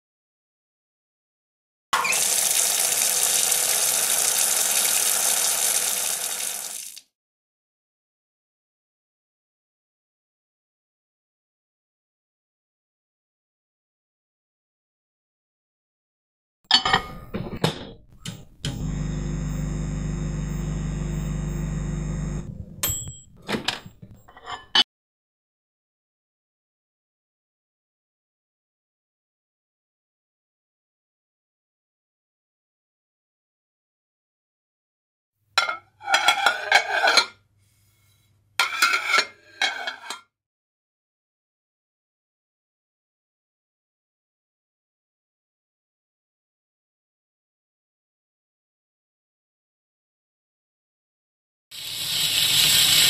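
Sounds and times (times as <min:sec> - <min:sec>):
dishes and cutlery clattering: 0:16.7 - 0:18.0, 0:35.6 - 0:37.3, 0:38.6 - 0:40.2
clicks: 0:18.1 - 0:18.9
microwave oven humming: 0:18.2 - 0:24.3.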